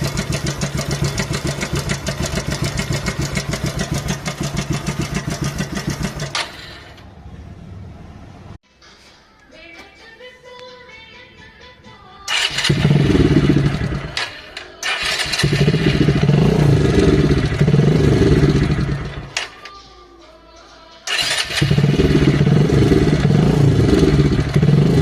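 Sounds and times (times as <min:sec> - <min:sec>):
motorcycle engine running: 0:00.0 - 0:07.0, 0:12.3 - 0:19.6, 0:21.1 - 0:25.0
faint music: 0:06.8 - 0:24.8.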